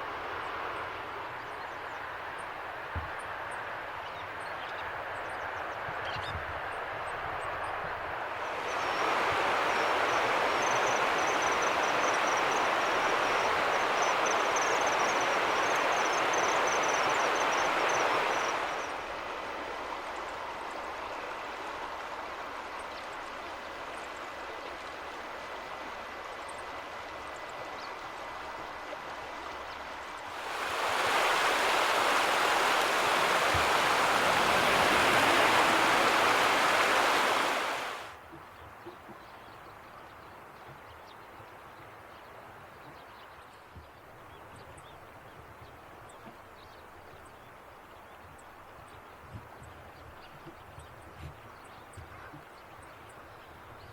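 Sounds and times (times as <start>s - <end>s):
river water rushing: 8.3s - 27.3s, 30.3s - 38.2s.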